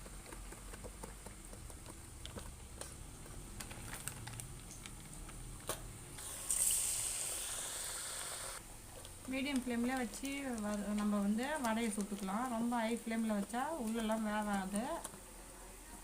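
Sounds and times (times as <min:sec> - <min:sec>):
fingers patting dough: 0:00.0 - 0:03.8, 0:09.0 - 0:15.2
frying in hot oil sizzling: 0:06.2 - 0:08.6.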